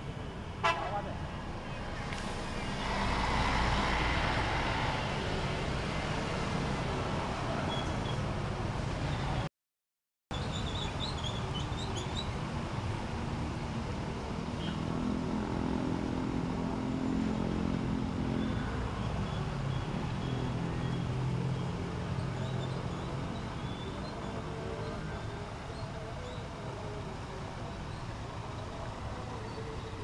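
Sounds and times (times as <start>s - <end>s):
bus engine drone: 0.0s - 9.5s
road noise: 0.0s - 9.5s, 10.3s - 30.0s.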